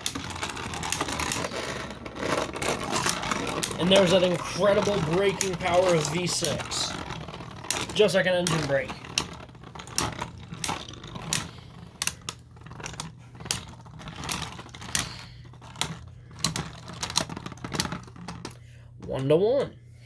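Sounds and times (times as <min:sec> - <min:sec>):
spinning tops clashing in plastic stadium: 0:00.0 - 0:18.6.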